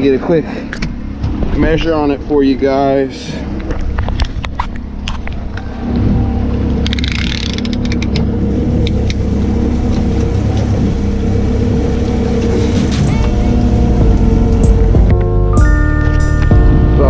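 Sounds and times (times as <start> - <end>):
boat engine humming: 0.0 - 17.0
music: 12.5 - 17.0.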